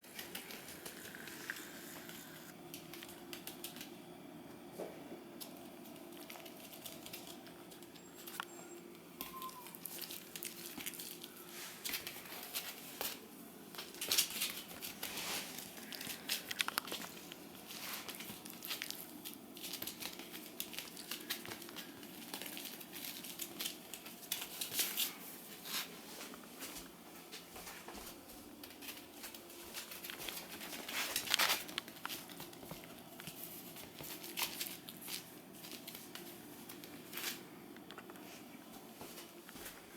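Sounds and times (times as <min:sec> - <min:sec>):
puppies rustling crinkly bedding: 0:00.0 - 0:01.7, 0:05.4 - 0:37.5.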